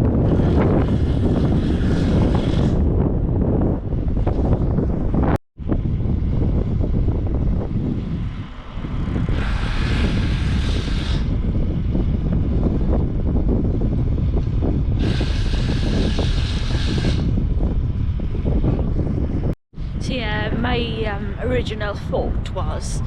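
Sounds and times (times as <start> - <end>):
strong wind buffeting microphone: 0.0 - 23.0
hissing bursts: 9.3 - 11.3, 15.0 - 17.3.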